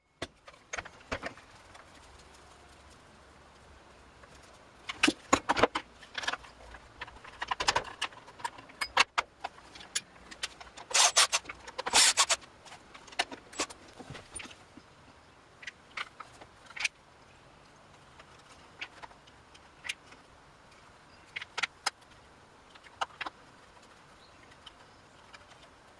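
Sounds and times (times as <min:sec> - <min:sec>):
metal parts and tools clinking: 0:04.9 - 0:09.2, 0:09.8 - 0:12.4.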